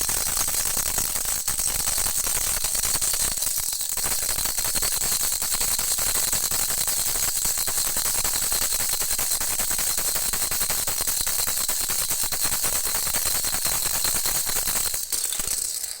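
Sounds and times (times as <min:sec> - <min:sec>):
baby rattle jingling: 0:14.9 - 0:16.0.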